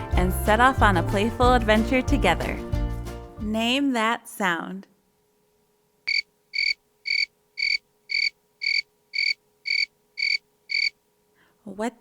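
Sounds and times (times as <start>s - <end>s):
cricket chirping: 6.1s - 11.0s.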